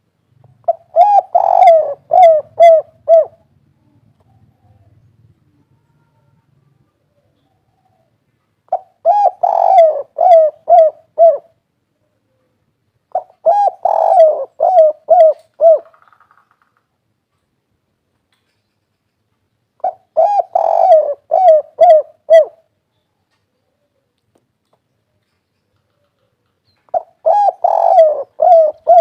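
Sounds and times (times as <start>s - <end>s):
dove cooing: 0.5s - 11.6s, 13.1s - 16.1s, 19.8s - 22.7s, 25.9s - 29.0s.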